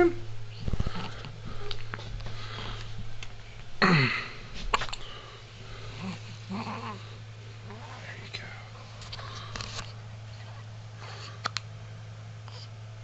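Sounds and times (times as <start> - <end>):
baby hiccupping: 4.7 - 5.0.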